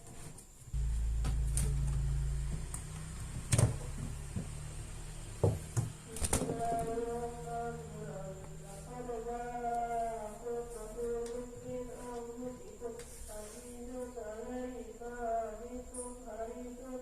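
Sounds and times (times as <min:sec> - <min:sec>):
low hum: 0:00.8 - 0:05.4.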